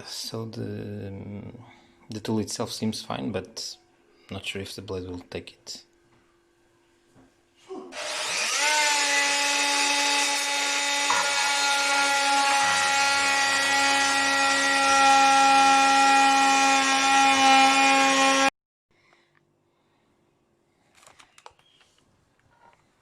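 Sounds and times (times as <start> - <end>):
oscillating multi-tool cutting wood: 7.9 - 18.5.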